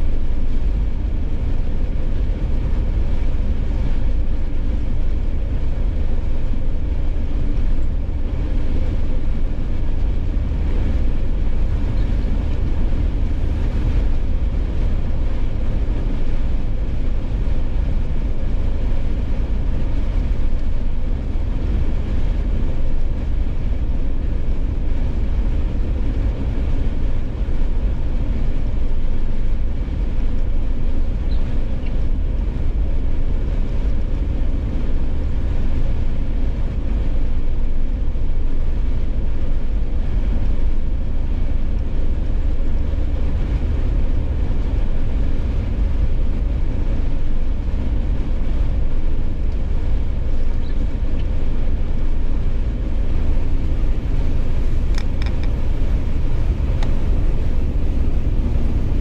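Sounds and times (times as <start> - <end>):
vehicle road and engine rumble: 0.0 - 59.0.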